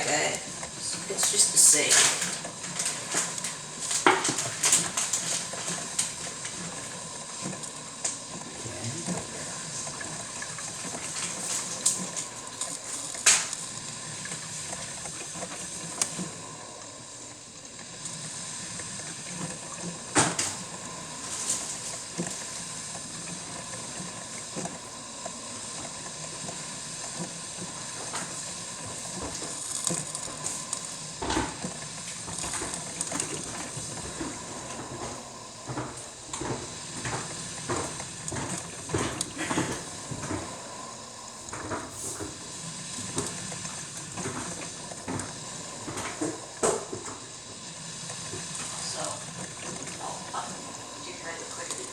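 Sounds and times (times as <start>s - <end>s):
coffee maker hissing and sputtering: 0.0s - 51.9s.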